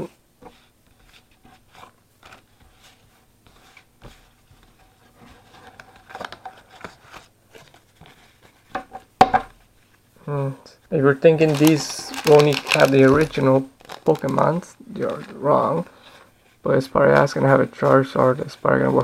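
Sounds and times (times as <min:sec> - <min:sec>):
cards and packaging rustling: 0:04.1 - 0:08.7, 0:11.0 - 0:19.0.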